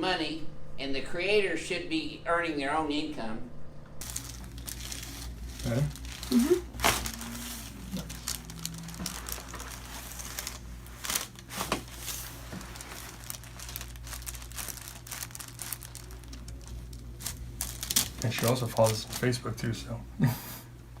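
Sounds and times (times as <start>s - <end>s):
crinkling and rustling: 4.0s - 19.6s.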